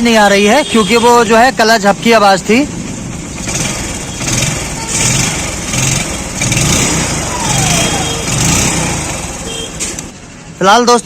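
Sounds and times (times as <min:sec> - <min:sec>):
motorcycle engine revving: 0:01.4 - 0:10.2.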